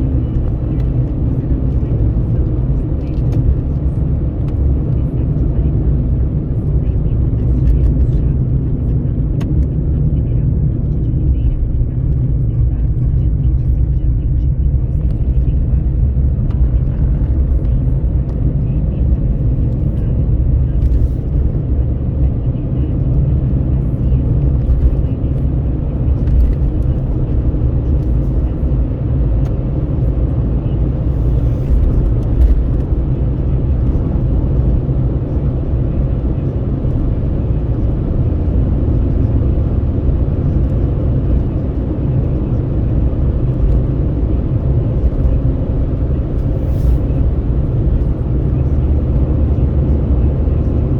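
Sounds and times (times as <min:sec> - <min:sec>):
engine drone: 0:00.0 - 0:50.9
road rumble: 0:00.0 - 0:50.9.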